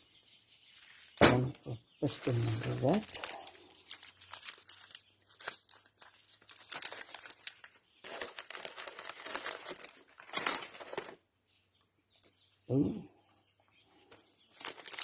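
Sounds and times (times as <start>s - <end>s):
packaging crinkling and tearing: 2.2s - 11.2s, 14.5s - 15.0s.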